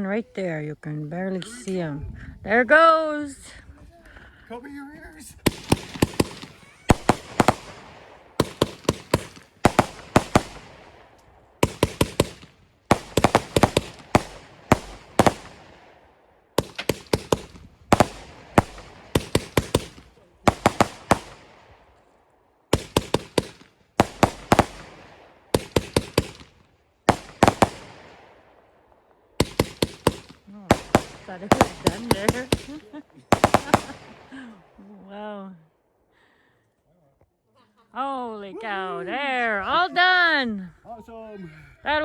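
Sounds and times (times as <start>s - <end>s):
fireworks crackling hiss: 5.4s - 10.7s
fireworks bangs: 5.4s - 21.9s, 22.7s - 34.8s.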